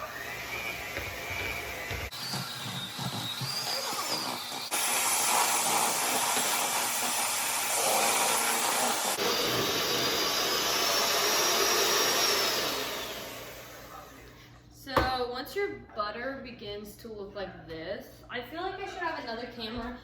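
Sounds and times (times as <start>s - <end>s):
electric hand mixer whirring: 0.0s - 14.1s.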